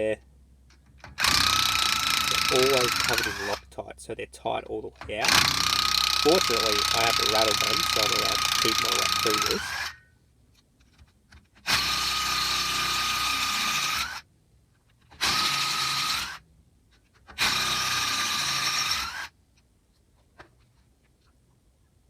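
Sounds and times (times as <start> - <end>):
impact wrench whine: 1.0 - 3.6, 5.2 - 10.1, 11.6 - 14.2, 15.2 - 16.4, 17.4 - 19.3.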